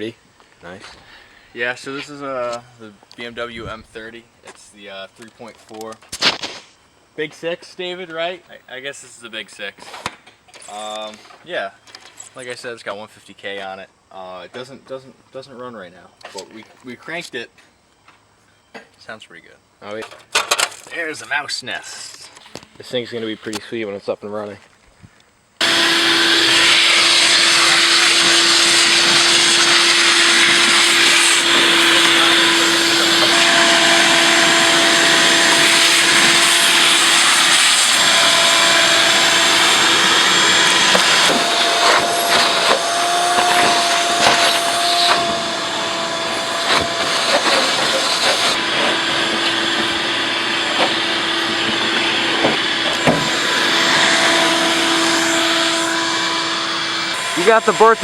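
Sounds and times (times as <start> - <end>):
vacuum motor running with whine: 25.6 - 58.0.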